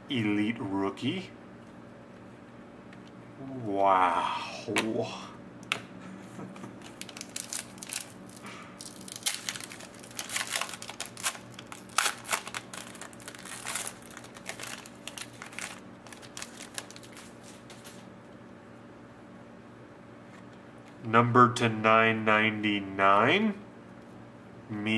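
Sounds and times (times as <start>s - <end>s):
wrapper tearing and crinkling: 6.8s - 18.0s.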